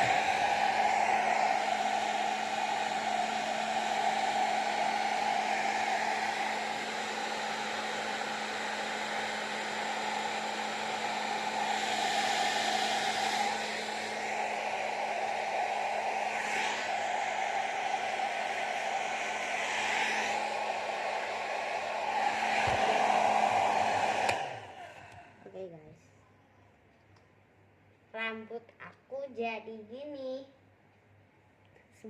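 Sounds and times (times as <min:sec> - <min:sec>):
hair dryer blowing: 0:00.0 - 0:25.4.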